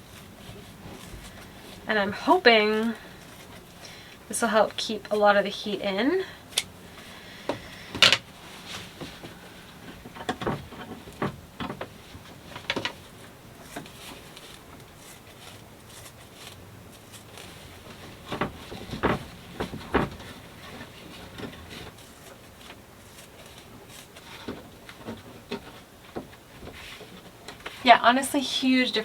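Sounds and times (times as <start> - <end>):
knocks clicks and rubbing: 6.4 - 28.0.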